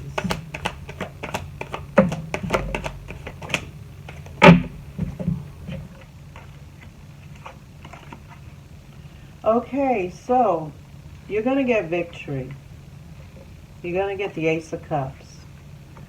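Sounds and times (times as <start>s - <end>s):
cards clicking and tapping: 0.0s - 6.5s
knock on table: 0.1s - 5.8s.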